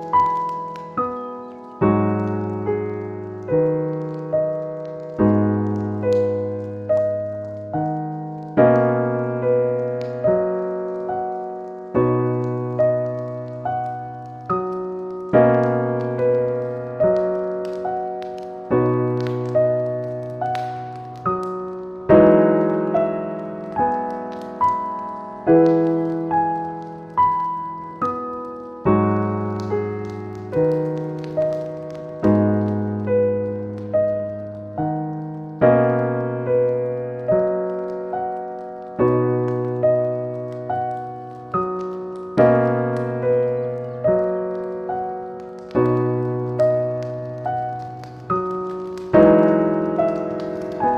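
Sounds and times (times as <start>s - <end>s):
slow piano music: 0.0s - 50.9s
wood fire crackling: 0.0s - 50.9s.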